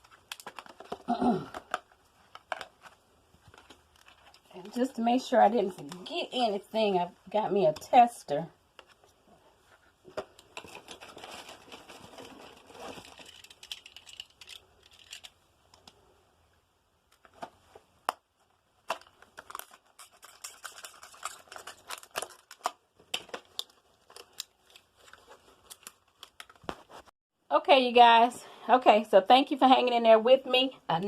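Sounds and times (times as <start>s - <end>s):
crinkling and rustling: 0.0s - 6.6s, 8.7s - 16.1s, 17.1s - 27.1s.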